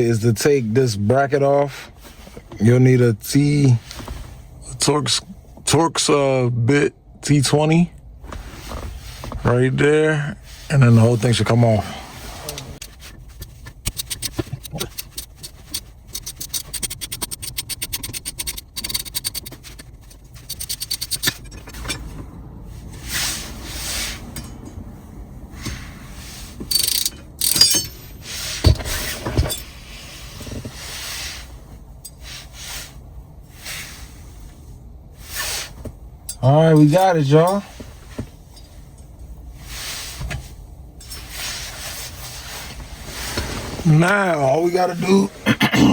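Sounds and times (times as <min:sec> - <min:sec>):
metal parts scraping and clinking: 0:12.5 - 0:22.1, 0:26.6 - 0:29.8, 0:41.0 - 0:41.8
ratcheting driver clicking: 0:13.8 - 0:21.7, 0:26.7 - 0:27.8.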